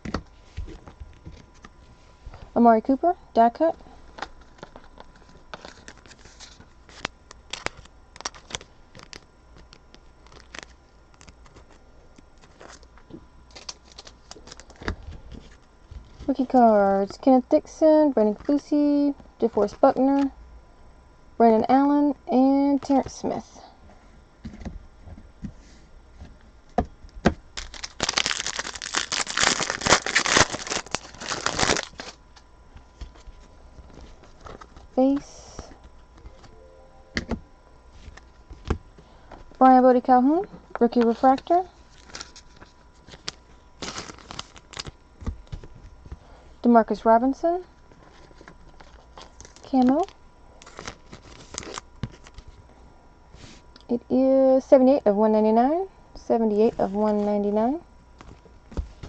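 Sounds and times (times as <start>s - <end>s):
cards clicking and rustling: 4.1s - 15.6s, 27.6s - 36.5s, 48.1s - 52.5s
wrapper tearing and crinkling: 4.2s - 11.8s, 12.4s - 14.9s, 27.5s - 32.2s, 41.1s - 45.6s, 48.2s - 52.4s.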